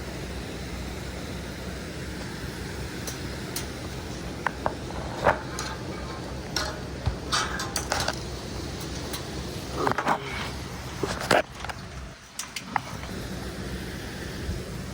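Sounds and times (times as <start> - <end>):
light clicks and clinks: 3.0 - 13.1.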